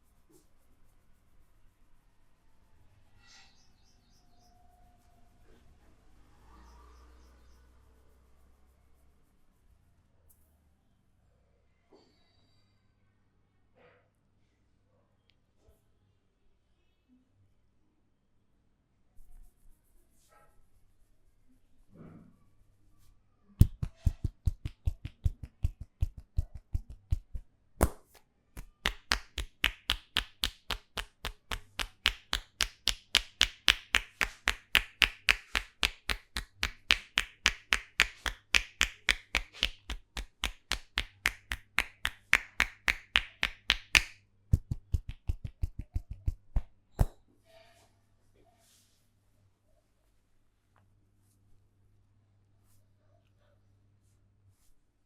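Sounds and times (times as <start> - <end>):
hands slapping a head: 23.6 - 47.2.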